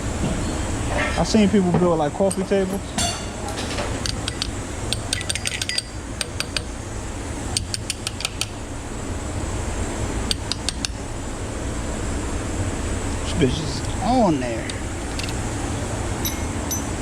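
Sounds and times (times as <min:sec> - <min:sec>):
steady low hum: 0:00.0 - 0:17.0
hand tools clinking on metal: 0:16.2 - 0:17.0.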